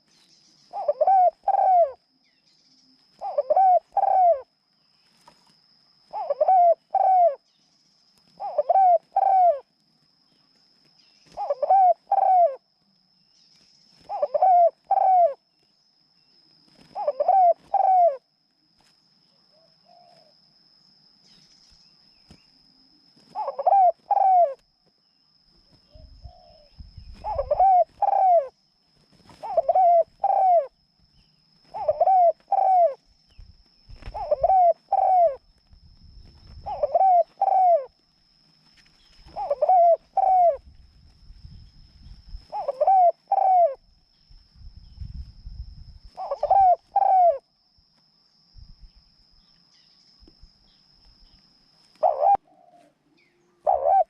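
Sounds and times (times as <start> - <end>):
dove cooing: 0.7 - 2.1, 3.2 - 4.5, 6.1 - 7.4, 8.4 - 9.7, 11.2 - 12.7, 14.0 - 15.4, 16.7 - 18.3, 19.5 - 20.4, 23.2 - 24.6, 25.7 - 28.6, 29.2 - 30.8, 31.6 - 33.0, 34.0 - 35.5, 36.5 - 38.0, 39.2 - 40.7, 42.4 - 43.9, 46.1 - 47.4, 52.0 - 54.0.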